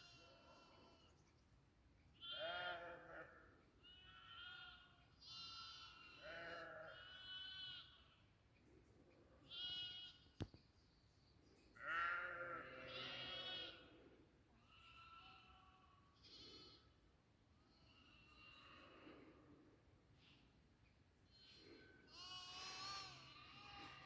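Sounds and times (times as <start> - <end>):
sheep and goats bleating: 0.0 - 1.1, 2.2 - 8.2, 9.4 - 10.2, 11.8 - 13.9, 14.6 - 17.0, 17.6 - 19.3, 21.4 - 24.0.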